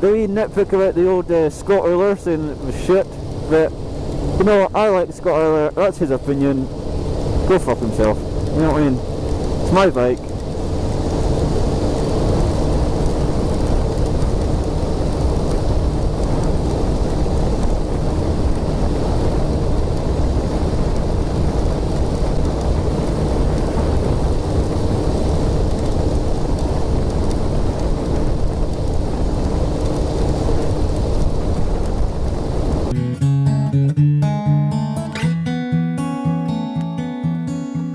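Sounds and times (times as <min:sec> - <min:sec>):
wind buffeting microphone: 0:00.0 - 0:32.9
motorcycle engine cruising: 0:00.0 - 0:37.9.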